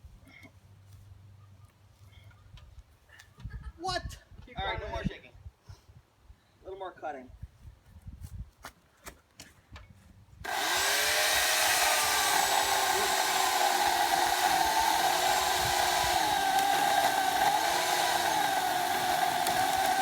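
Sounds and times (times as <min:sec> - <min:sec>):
power saw cutting log: 0:10.4 - 0:20.0.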